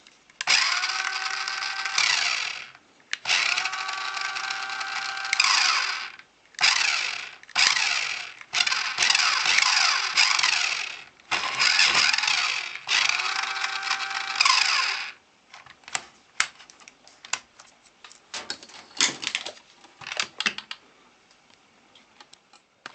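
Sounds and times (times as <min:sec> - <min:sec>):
toy car motor whirring: 0:00.4 - 0:15.2.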